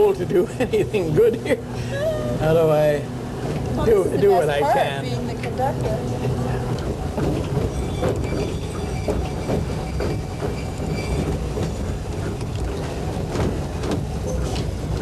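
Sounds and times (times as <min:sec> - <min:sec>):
streetcar rumbling on rails: 0:00.0 - 0:15.0
wheel clatter: 0:02.4 - 0:15.0
wheels squealing on track: 0:07.4 - 0:13.0.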